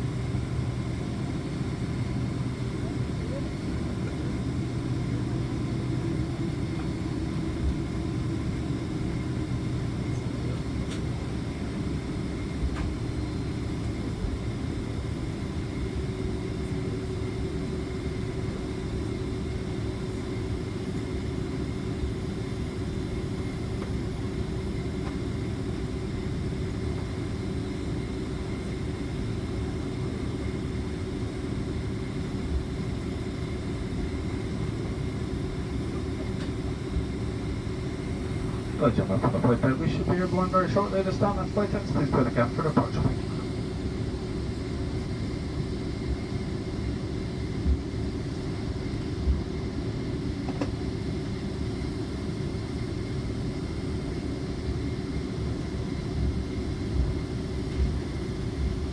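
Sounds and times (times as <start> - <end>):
aircraft cabin engine rumble: 0.0 - 58.9.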